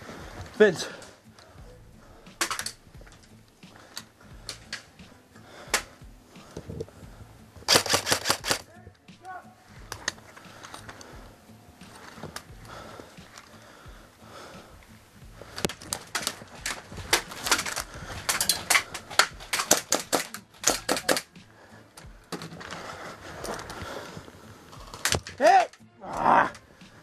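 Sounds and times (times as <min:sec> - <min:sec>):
airsoft gunfire: 0:07.7 - 0:08.6, 0:18.7 - 0:21.3.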